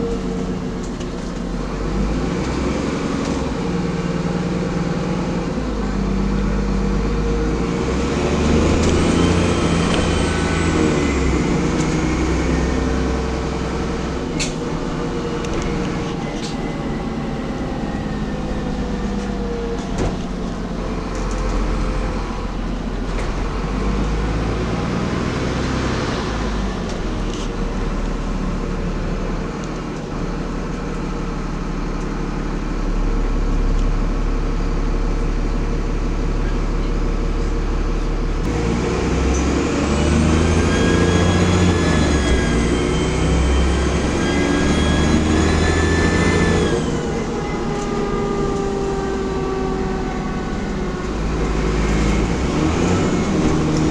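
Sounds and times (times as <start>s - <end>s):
bus diesel engine running: 0.0s - 53.9s
turbocharger whistle: 40.4s - 52.3s.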